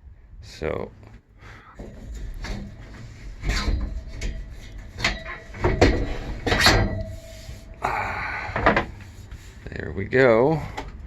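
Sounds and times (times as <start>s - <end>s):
ramp clunking and scraping: 1.6s - 7.8s.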